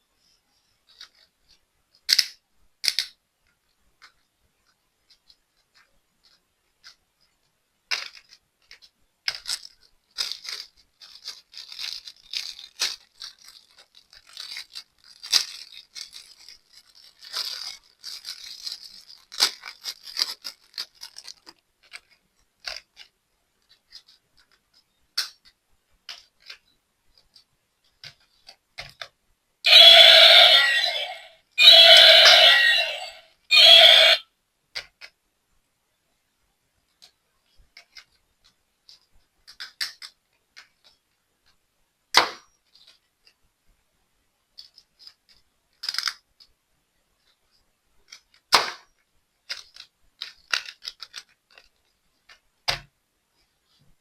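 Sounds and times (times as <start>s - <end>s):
plastic toy clicks and scrapes: 7.9s - 25.5s, 44.6s - 46.2s, 49.5s - 52.4s
toy dinosaur electronic call: 29.7s - 34.2s.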